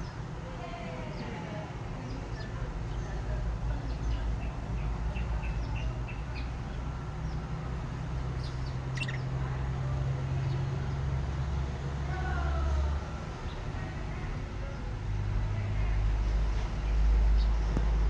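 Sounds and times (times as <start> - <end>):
lovebirds chirping: 3.8 - 11.2.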